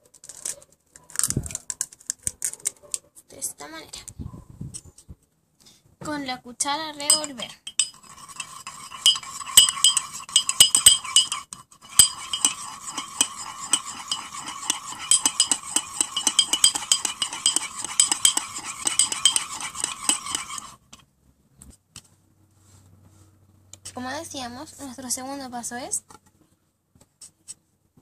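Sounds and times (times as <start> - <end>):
dish ringing: 7.1 - 20.7
spoon clinking against dish: 7.1 - 20.7.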